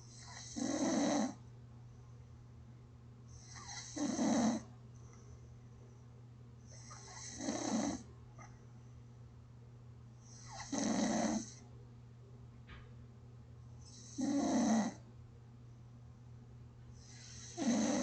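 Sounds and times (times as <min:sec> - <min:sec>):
faint low hum: 0:00.0 - 0:18.0
person snoring gently: 0:00.2 - 0:01.4, 0:03.5 - 0:04.6, 0:06.8 - 0:08.0, 0:10.4 - 0:11.6, 0:13.9 - 0:15.0, 0:17.0 - 0:18.0.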